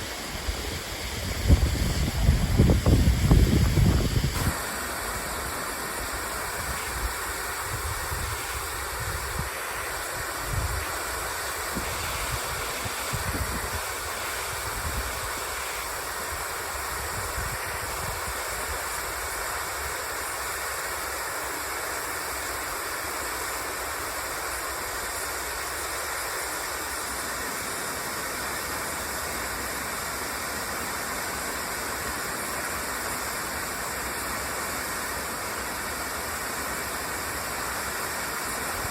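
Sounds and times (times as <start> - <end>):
waterfall rushing: 0.0 - 38.9
wind buffeting microphone: 0.4 - 4.5, 11.7 - 13.8.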